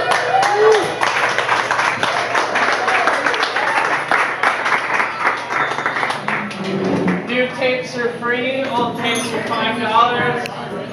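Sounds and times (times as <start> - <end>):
audience applauding: 0.0 - 7.2.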